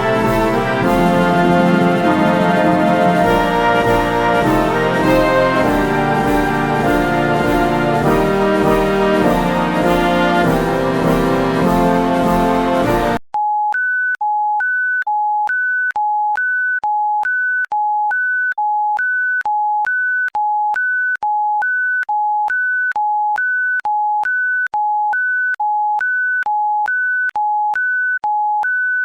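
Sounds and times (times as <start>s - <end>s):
orchestral brass music: 0.0s - 13.2s.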